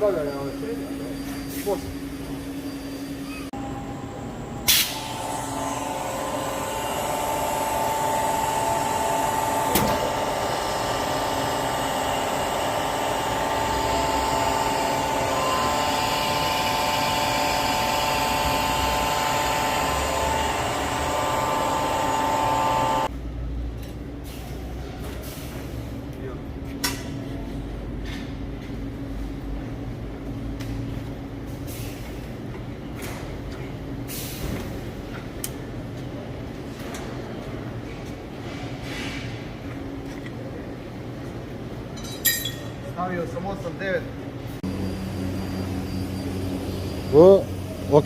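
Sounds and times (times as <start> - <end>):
electric motor whining: 5.0 - 23.1.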